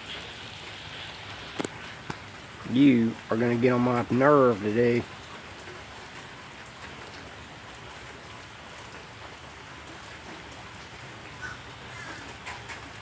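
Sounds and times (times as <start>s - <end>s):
steady rain falling: 0.0s - 13.0s.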